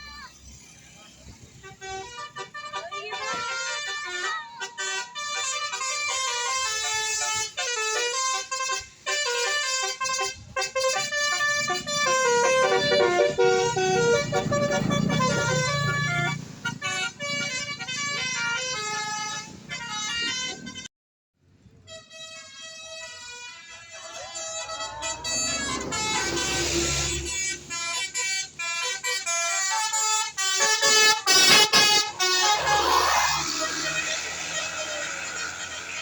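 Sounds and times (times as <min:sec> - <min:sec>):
multi-tone air horn tune: 0:01.3 - 0:20.9, 0:21.6 - 0:36.0
low rumble: 0:24.1 - 0:27.8.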